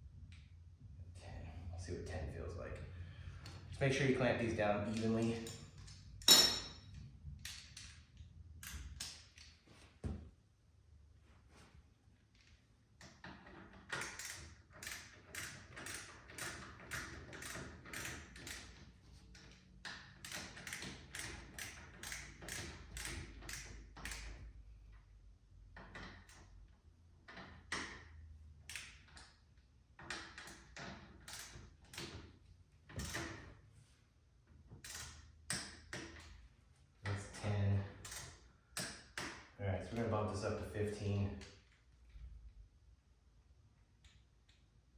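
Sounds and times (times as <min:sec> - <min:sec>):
torque wrench ratcheting clicks: 0:13.9 - 0:18.8, 0:20.2 - 0:24.3, 0:34.8 - 0:35.6, 0:38.0 - 0:39.0.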